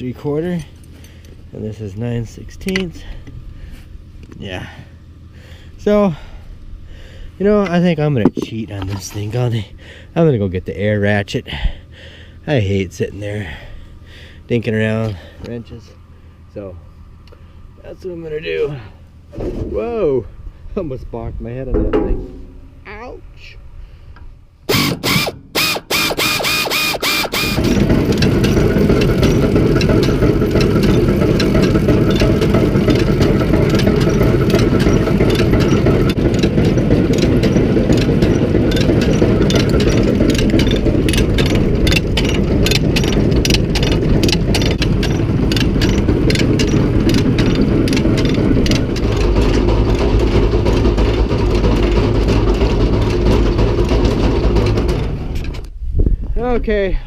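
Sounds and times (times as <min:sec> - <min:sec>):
motor humming with fast ticking: 0:24.7 - 0:55.0.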